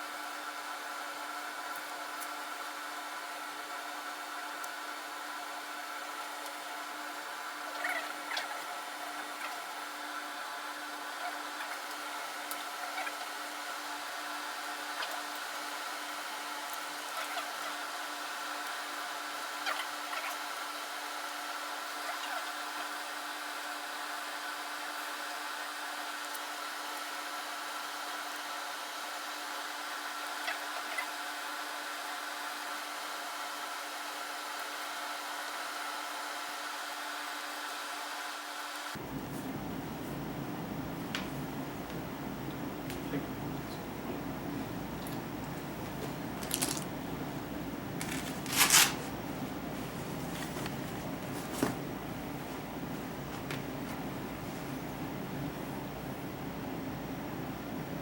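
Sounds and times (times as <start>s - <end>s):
mechanical hum of equipment: 0.0s - 58.0s.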